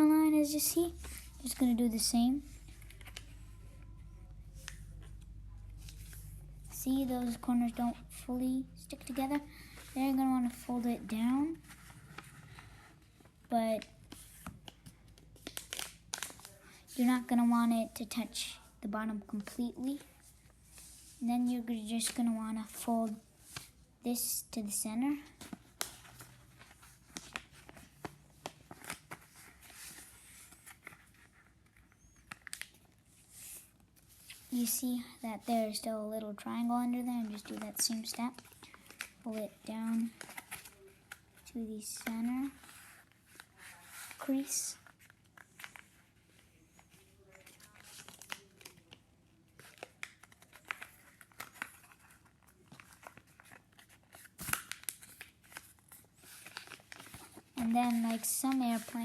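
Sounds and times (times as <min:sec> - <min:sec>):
paper crackling and creasing: 0:00.0 - 0:23.8, 0:25.0 - 0:34.8, 0:35.4 - 0:59.0
paper rustle: 0:00.9 - 0:06.4, 0:09.0 - 0:17.1, 0:25.1 - 0:34.7, 0:37.1 - 0:59.0
paper creases crackling: 0:49.6 - 0:59.0.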